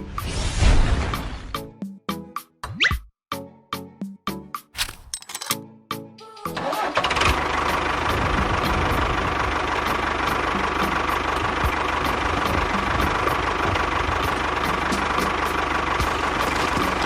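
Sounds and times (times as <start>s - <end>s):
small engine idling: 6.6s - 17.0s.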